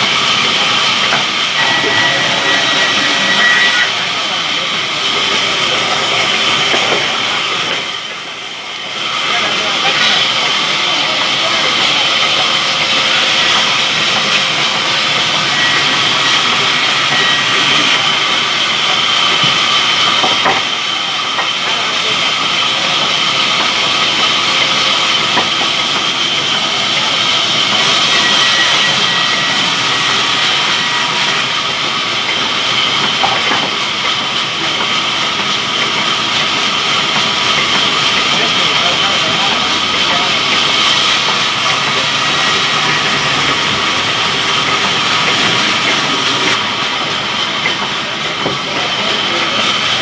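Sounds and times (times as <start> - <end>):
saw cutting wood: 0.0 - 4.4, 9.6 - 20.7, 21.4 - 31.5, 39.9 - 46.6, 49.6 - 50.0.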